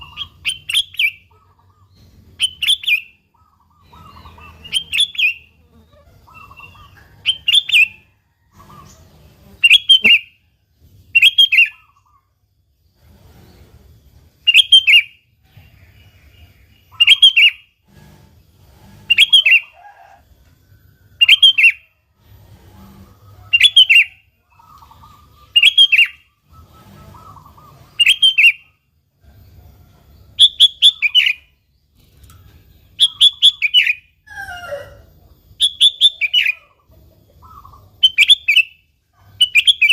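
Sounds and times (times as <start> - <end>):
bulbul singing: 0.0 - 10.4, 14.4 - 17.8, 23.5 - 28.8, 30.4 - 39.9.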